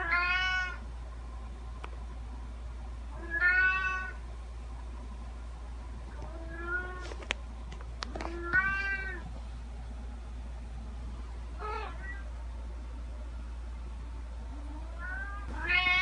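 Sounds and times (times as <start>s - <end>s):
cat meowing: 0.0s - 0.8s, 3.2s - 4.2s, 6.3s - 7.0s, 8.3s - 9.2s, 11.6s - 12.3s, 15.0s - 16.0s.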